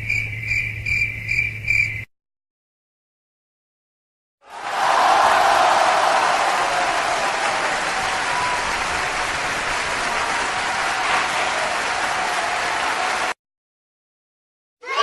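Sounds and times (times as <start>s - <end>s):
crowd applause: 4.4s - 13.4s.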